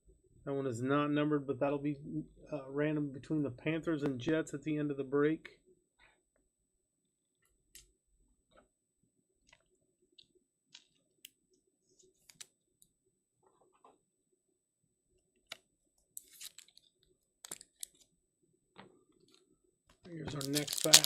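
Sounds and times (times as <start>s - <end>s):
trading cards handled on table: 16.2s - 16.9s, 20.3s - 21.0s.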